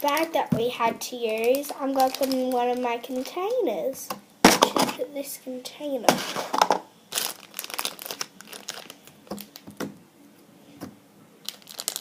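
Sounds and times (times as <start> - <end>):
plastic bag crinkling: 0.0 - 3.6, 6.1 - 10.0, 11.4 - 12.0.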